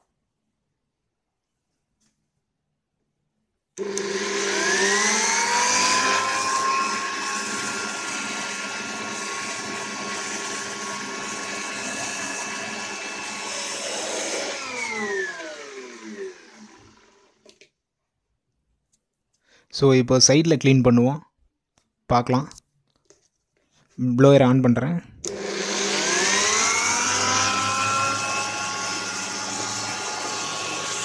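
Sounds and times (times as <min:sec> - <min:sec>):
electric air blower whining: 0:03.8 - 0:17.5, 0:25.3 - 0:31.0.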